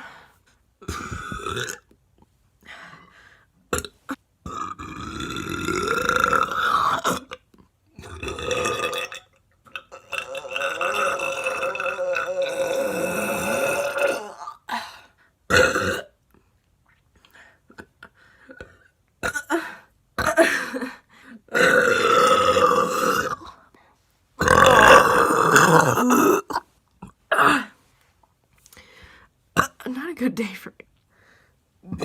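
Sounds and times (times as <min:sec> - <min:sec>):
woman burping: 0:00.8 - 0:01.9, 0:03.7 - 0:14.8, 0:15.5 - 0:16.2, 0:17.7 - 0:20.9, 0:21.5 - 0:23.5, 0:24.4 - 0:27.8, 0:29.6 - 0:29.8.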